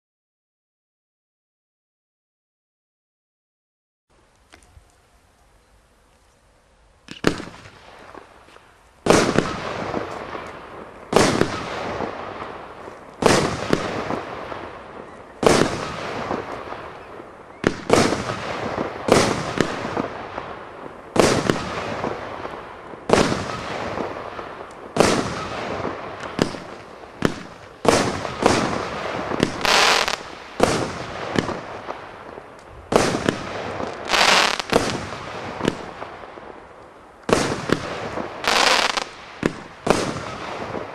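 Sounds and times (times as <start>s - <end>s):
firework launches and bangs: 7.1s - 8.3s, 9.0s - 36.6s, 37.3s - 40.9s
firework crackle: 7.1s - 40.9s.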